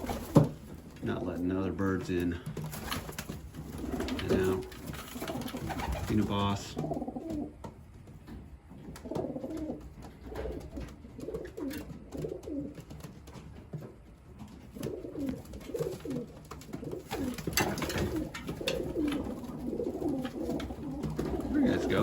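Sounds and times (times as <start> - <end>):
pigeons cooing: 0.0 - 7.7, 8.7 - 13.1, 14.5 - 22.0.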